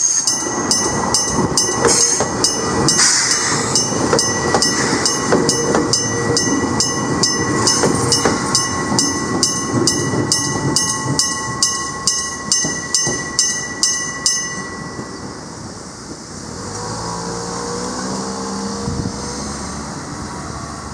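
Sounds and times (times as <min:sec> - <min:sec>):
train running: 0:00.0 - 0:20.9
level crossing bell ringing: 0:00.3 - 0:15.5.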